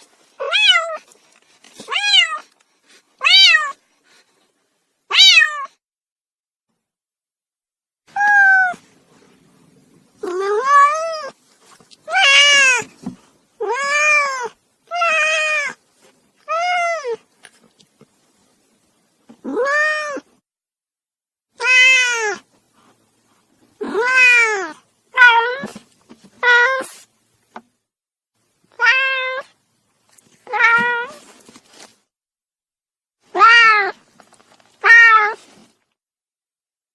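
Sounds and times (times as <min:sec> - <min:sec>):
cat yowling: 0:03.2 - 0:03.8, 0:05.1 - 0:05.7, 0:08.1 - 0:08.8, 0:10.2 - 0:11.4, 0:12.1 - 0:12.9, 0:16.5 - 0:17.2, 0:19.4 - 0:20.3, 0:21.6 - 0:22.4, 0:23.8 - 0:25.8, 0:26.4 - 0:27.0, 0:28.8 - 0:29.5, 0:33.3 - 0:34.0, 0:34.8 - 0:35.4.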